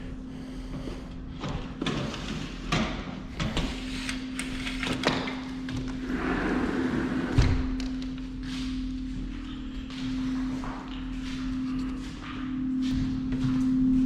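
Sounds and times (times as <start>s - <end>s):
steady low hum: 0.0s - 14.0s
door sliding scrape: 6.0s - 7.5s.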